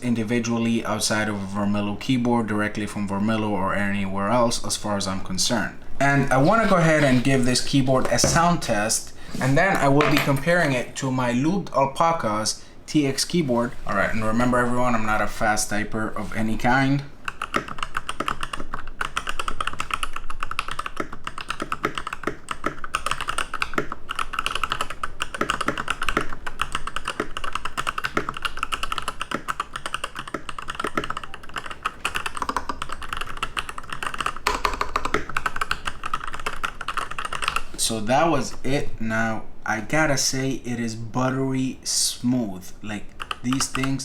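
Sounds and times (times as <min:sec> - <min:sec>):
mechanical keyboard typing: 0:17.2 - 0:37.7, 0:43.1 - 0:44.0.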